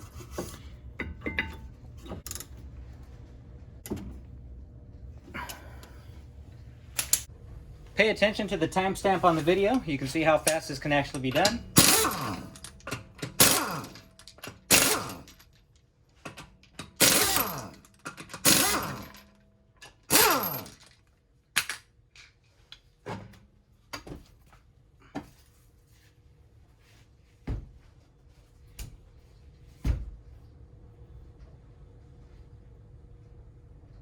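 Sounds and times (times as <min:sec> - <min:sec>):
tools and parts clicking and knocking: 0:00.1 - 0:02.6, 0:06.9 - 0:07.3, 0:10.4 - 0:24.2
impact wrench bursts: 0:10.4 - 0:15.4, 0:16.8 - 0:19.2, 0:20.0 - 0:20.8.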